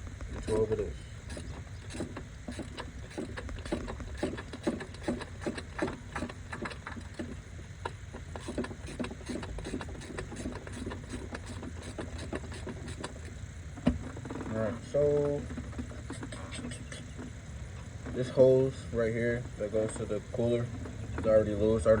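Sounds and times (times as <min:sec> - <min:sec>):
steady low hum: 0:00.0 - 0:22.0
ratchet clicking: 0:00.2 - 0:16.7.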